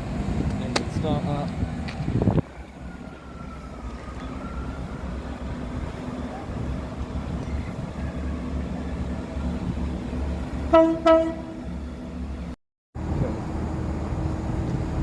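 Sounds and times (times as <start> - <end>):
low rumble of train: 0.0 - 15.0
train horn toots: 10.7 - 11.8.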